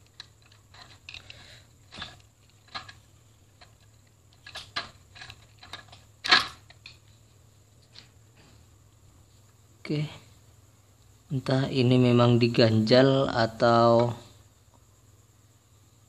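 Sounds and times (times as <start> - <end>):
plastic housing clicks and scrapes: 0.0 - 3.0, 3.6 - 7.0.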